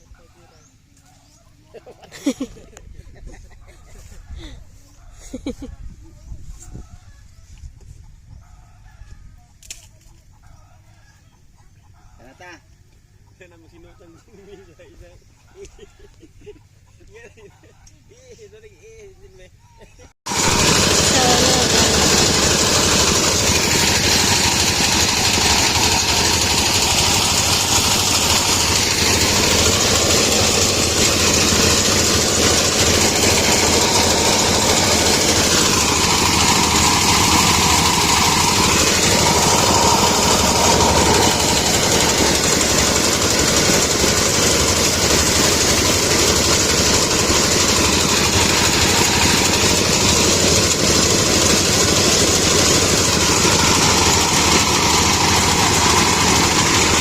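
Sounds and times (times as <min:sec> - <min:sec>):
small engine running: 0:20.3 - 0:57.0.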